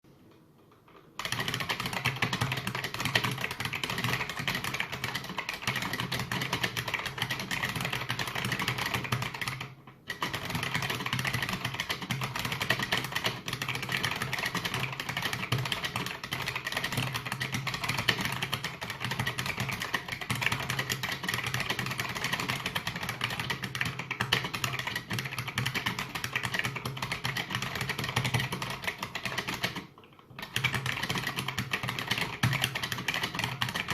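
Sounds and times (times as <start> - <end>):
fast keyboard typing clatter: 0.8 - 33.9.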